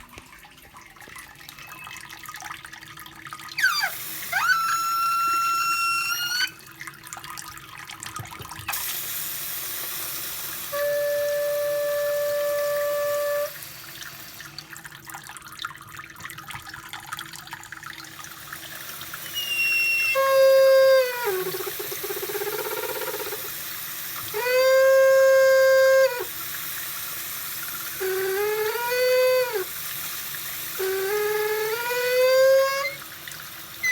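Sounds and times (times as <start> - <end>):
water running from faucet: 0.0 - 33.9
faucet squealing: 1.4 - 2.4, 3.4 - 6.8, 8.6 - 14.5, 18.0 - 33.9.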